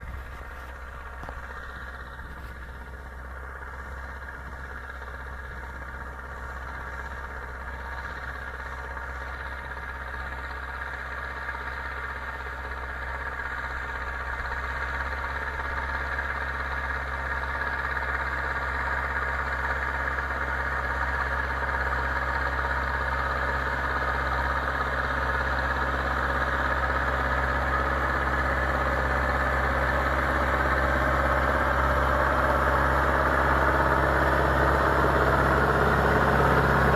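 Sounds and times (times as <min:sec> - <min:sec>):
tractor diesel engine running: 0:00.0 - 0:36.9.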